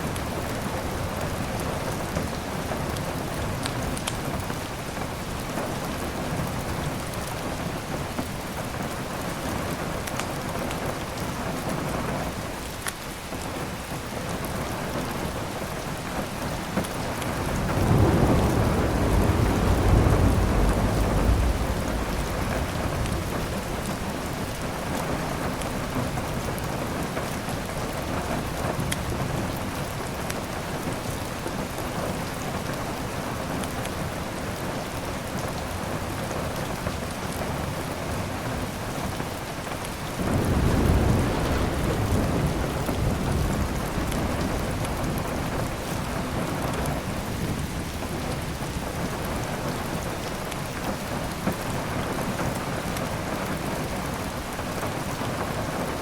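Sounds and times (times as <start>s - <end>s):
heavy rain: 0.0s - 56.0s
thunder rumbling: 14.8s - 31.0s, 40.1s - 50.0s
wood fire crackling: 16.6s - 25.8s.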